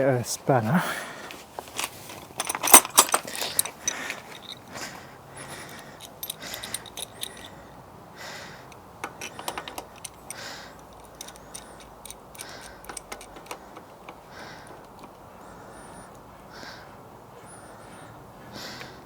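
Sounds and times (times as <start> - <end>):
metal tools clinking: 1.3 - 7.7, 8.6 - 16.2.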